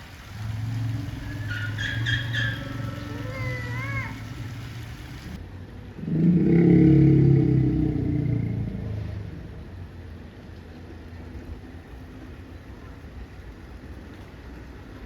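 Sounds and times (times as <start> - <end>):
elephant growling: 0.3 - 5.4, 6.0 - 9.6.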